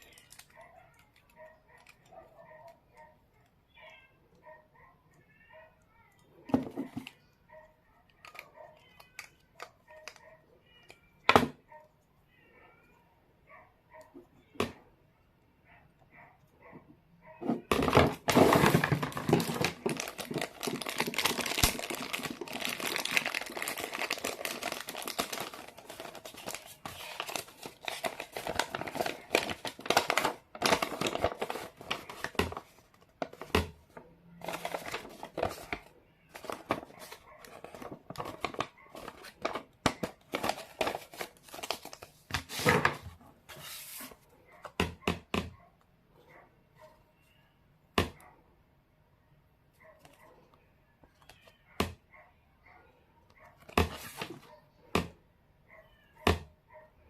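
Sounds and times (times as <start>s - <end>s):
packaging crinkling and tearing: 0.0s - 2.0s, 17.7s - 33.7s, 34.4s - 43.1s.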